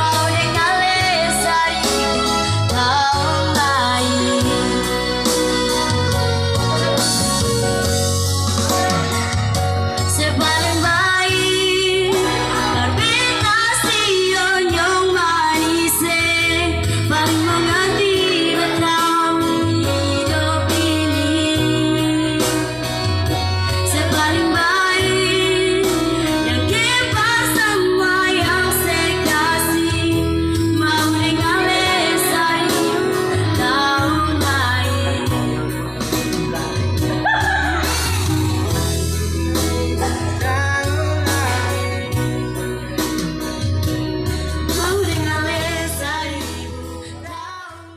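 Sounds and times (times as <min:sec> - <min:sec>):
woman singing with vibrato: 0:00.0 - 0:05.8, 0:10.0 - 0:35.7, 0:37.2 - 0:38.8, 0:44.7 - 0:47.9
pulsing bass line: 0:00.0 - 0:46.9
keyboard backing: 0:00.0 - 0:47.9.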